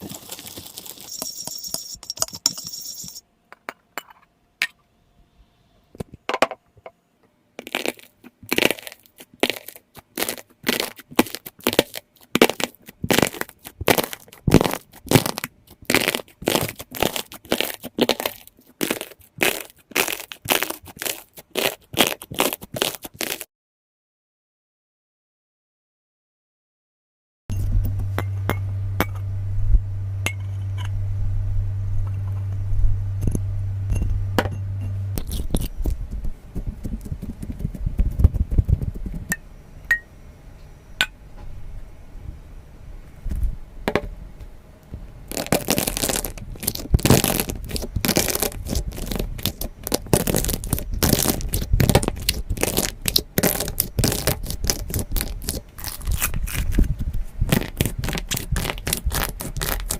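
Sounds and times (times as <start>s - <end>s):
slime squelching: 7.6s - 23.5s, 35.2s - 39.2s, 45.3s - 59.9s
low hum: 27.5s - 52.9s.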